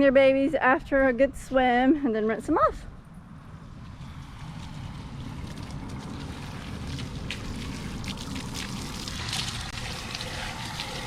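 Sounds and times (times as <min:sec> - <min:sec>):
water running and trickling: 0:03.6 - 0:11.0
water splashes: 0:03.6 - 0:11.0.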